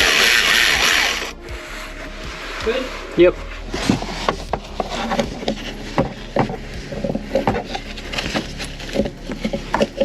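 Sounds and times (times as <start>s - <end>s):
hand tools knocking and scraping: 3.8s - 10.0s.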